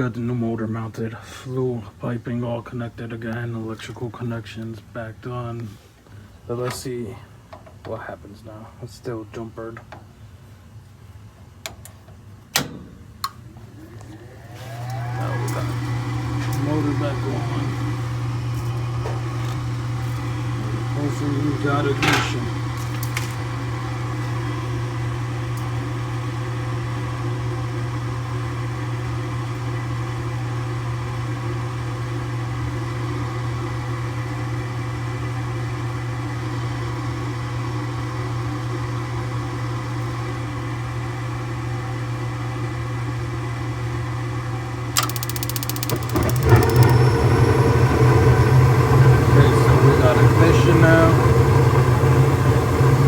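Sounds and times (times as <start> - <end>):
gas burners lighting: 11.7 - 26.0, 44.9 - 53.0
furnace motor humming: 11.7 - 53.0
furnace click: 45.0 - 47.0.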